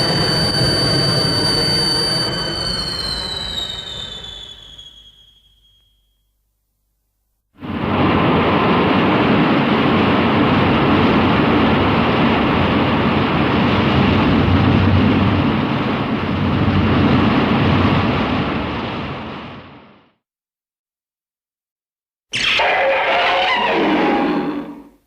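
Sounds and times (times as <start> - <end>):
loud rushing rumbling noise: 7.6 - 20.0.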